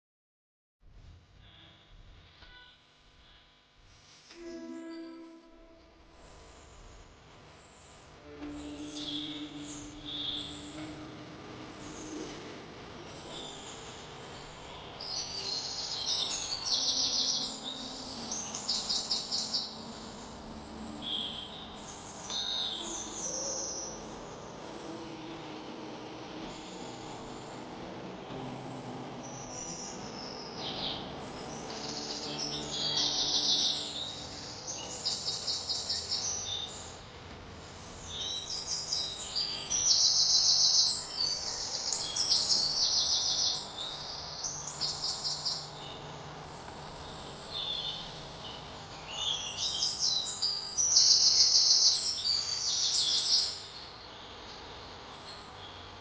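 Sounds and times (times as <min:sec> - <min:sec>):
songbird trilling and chirping: 0:31.6 - 0:36.8.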